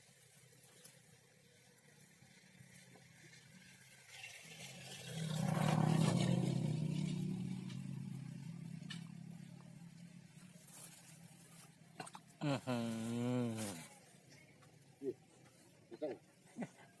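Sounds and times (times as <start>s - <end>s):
vehicle passing by: 3.6s - 11.7s.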